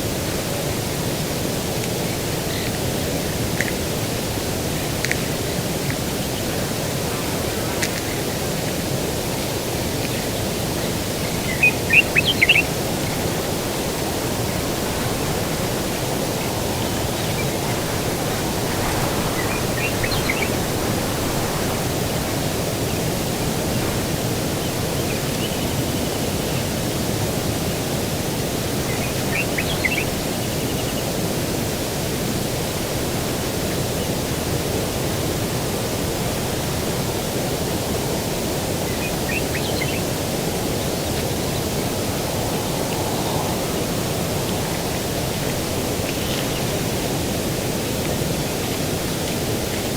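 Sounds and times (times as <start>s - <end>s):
low rushing noise: 4.2s - 26.4s, 40.1s - 49.7s
bird chirping: 11.2s - 21.9s.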